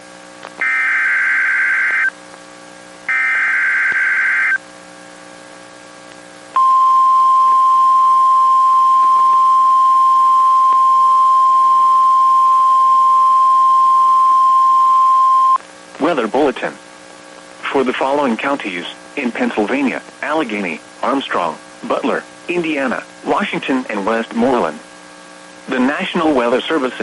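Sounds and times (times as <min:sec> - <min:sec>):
steady warning alarm tone: 0:00.6 - 0:02.1, 0:03.1 - 0:04.6
raspy digital data bursts: 0:03.1 - 0:04.6.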